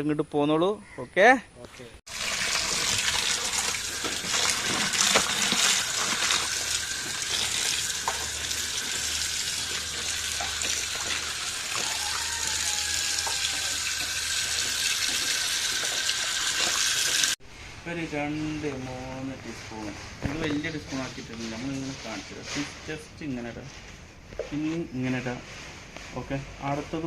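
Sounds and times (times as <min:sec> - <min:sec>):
water running: 0:02.1 - 0:17.4.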